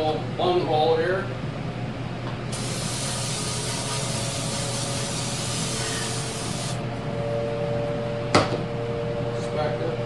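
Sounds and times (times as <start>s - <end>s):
compressed air hissing: 2.5s - 6.8s.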